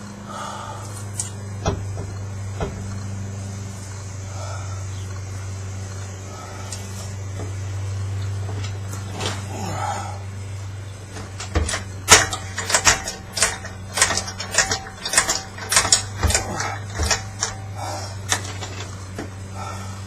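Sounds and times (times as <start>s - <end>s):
low hum: 0.0s - 20.0s
metal clicks and knocks: 1.6s - 3.0s, 11.1s - 19.4s.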